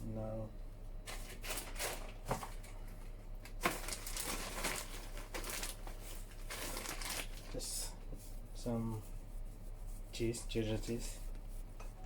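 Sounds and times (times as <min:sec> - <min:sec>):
plastic packaging rustling: 0:01.1 - 0:07.9.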